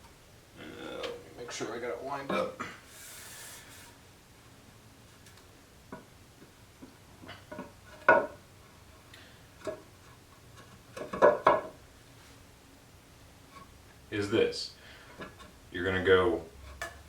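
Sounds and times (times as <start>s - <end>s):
wooden pieces knocking together: 10.6s - 11.8s.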